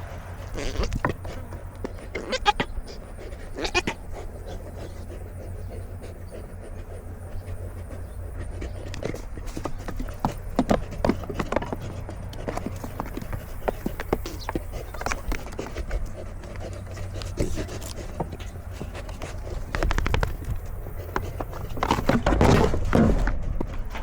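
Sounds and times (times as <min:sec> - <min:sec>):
goat bleating: 0:00.4 - 0:04.4.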